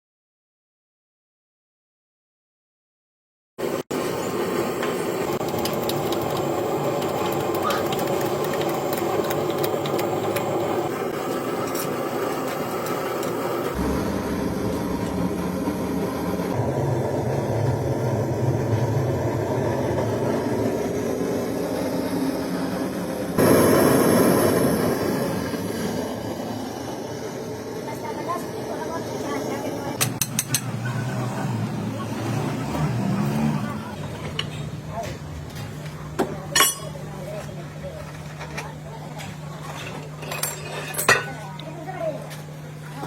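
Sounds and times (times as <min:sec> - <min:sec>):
heavy machinery running: 0:04.0 - 0:27.7.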